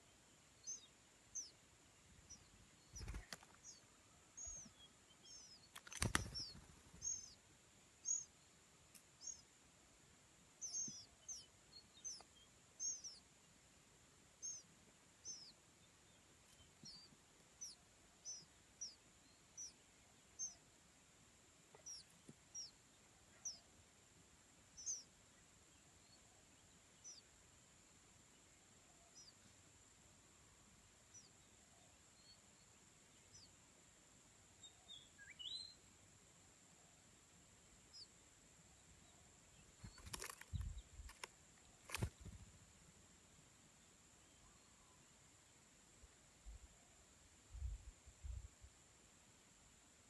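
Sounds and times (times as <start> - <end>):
bird chirping: 0.0 - 9.6, 10.5 - 13.6, 14.3 - 20.7, 21.7 - 23.8, 24.7 - 29.6, 34.5 - 36.0, 37.7 - 42.5.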